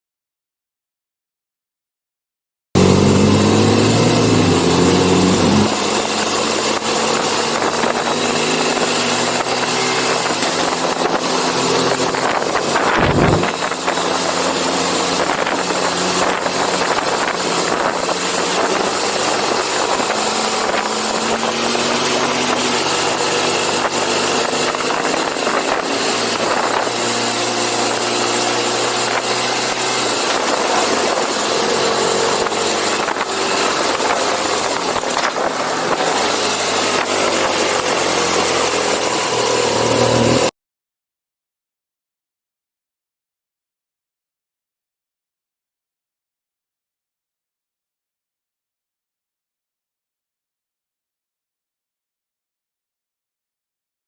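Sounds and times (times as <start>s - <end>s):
motorcycle engine revving: 2.8s - 40.5s
wind rush on microphone: 2.8s - 40.5s.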